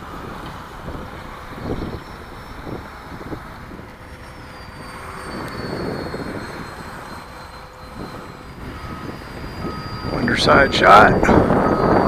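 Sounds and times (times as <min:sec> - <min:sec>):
electric ducted fan whining: 0:00.0 - 0:12.0
wind rumble on microphone: 0:00.0 - 0:12.0.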